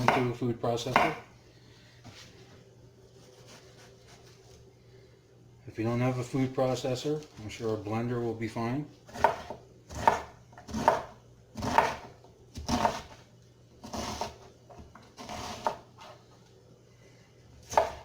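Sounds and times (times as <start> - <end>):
knife chopping on cutting board: 0.0 - 1.2, 9.1 - 13.2, 13.8 - 14.4, 15.2 - 16.1, 17.6 - 18.0.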